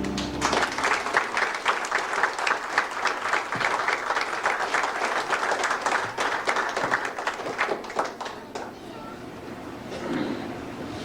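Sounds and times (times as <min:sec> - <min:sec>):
crowd applauding: 0:00.0 - 0:08.8.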